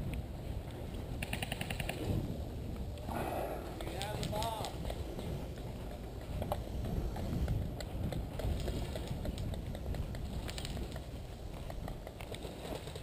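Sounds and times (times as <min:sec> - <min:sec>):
sharp clicks: 0:01.2 - 0:02.1, 0:03.7 - 0:06.6, 0:07.6 - 0:13.0
footsteps: 0:02.0 - 0:13.0
rustling of gear: 0:03.6 - 0:13.0.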